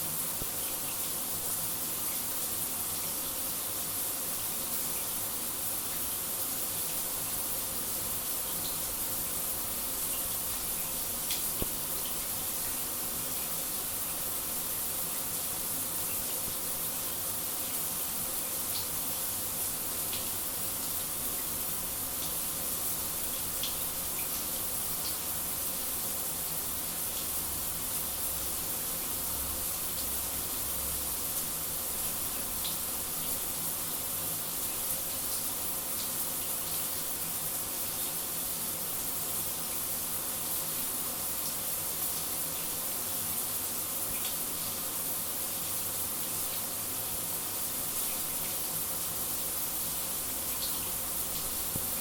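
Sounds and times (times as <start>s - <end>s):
shower water spray hissing: 0.0s - 52.0s
faint ticks of water drops: 10.1s - 12.8s.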